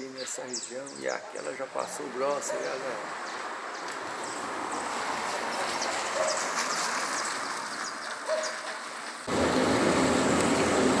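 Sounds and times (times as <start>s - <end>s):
birds chirping: 0.0s - 8.7s
steady rain falling: 8.7s - 11.0s.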